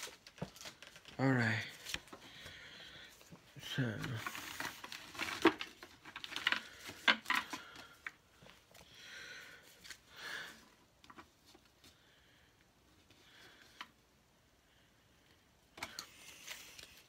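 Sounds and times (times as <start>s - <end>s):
wrapper rustling: 0.0s - 2.2s, 3.6s - 8.0s.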